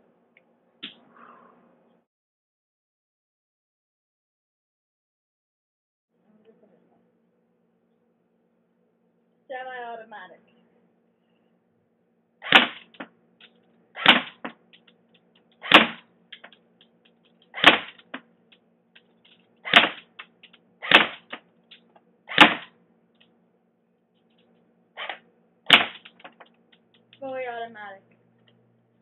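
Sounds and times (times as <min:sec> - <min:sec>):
airsoft rifle single shots: 0:12.4 - 0:13.0, 0:14.0 - 0:14.5, 0:15.6 - 0:16.1, 0:17.6 - 0:18.2, 0:19.6 - 0:20.1, 0:20.8 - 0:21.4, 0:22.3 - 0:22.7, 0:25.0 - 0:26.2.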